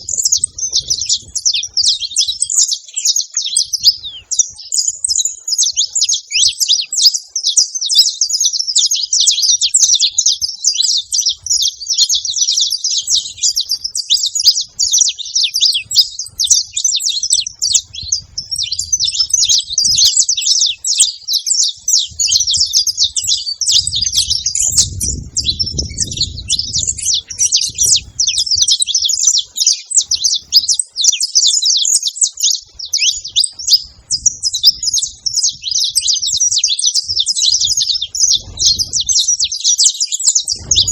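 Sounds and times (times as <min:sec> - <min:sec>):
finches singing and chirping: 0:00.0 - 0:40.9.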